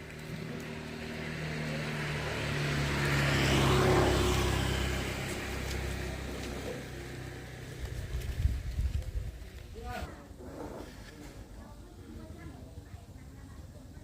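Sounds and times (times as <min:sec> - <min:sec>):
vehicle engine passing by: 0:00.0 - 0:09.1.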